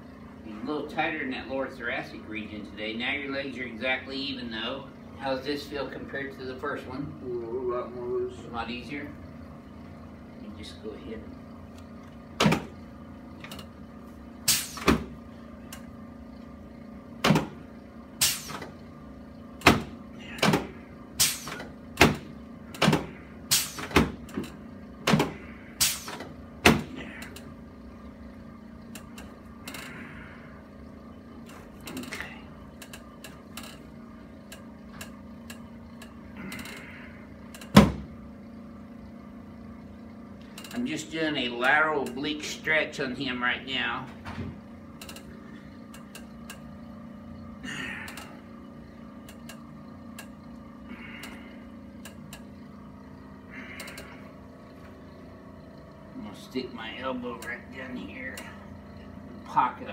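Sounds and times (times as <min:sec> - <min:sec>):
sharp clicks and knocks of back: 0:19.6 - 0:27.5, 0:45.0 - 0:45.3.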